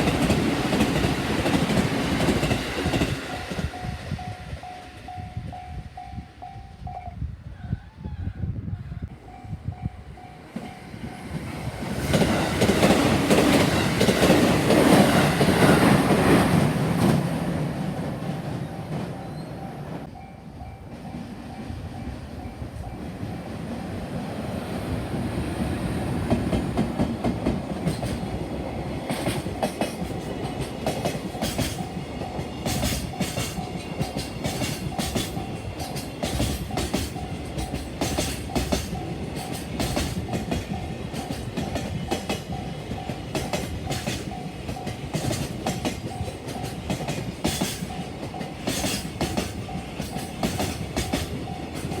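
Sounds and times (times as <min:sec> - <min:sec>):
wheels clacking over rail joints: 0:00.0 - 0:03.8, 0:10.5 - 0:19.5, 0:26.2 - 0:52.0
train passing: 0:00.0 - 0:07.9, 0:09.0 - 0:52.0.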